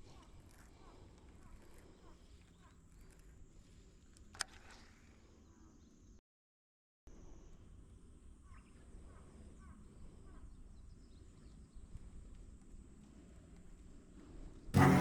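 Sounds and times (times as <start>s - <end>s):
faint bird chirps: 5.3s - 6.2s, 7.1s - 12.0s.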